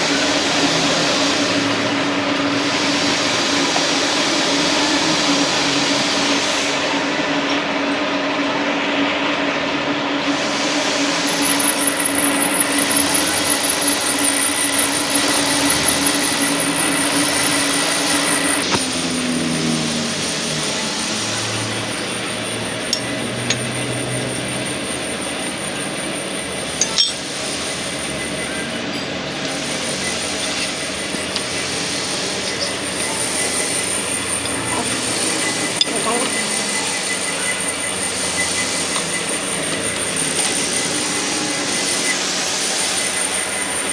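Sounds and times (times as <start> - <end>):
machinery motor hum: 0.0 - 43.9
motor slowing down: 0.0 - 43.9
sharp metal clinks: 26.8 - 27.2.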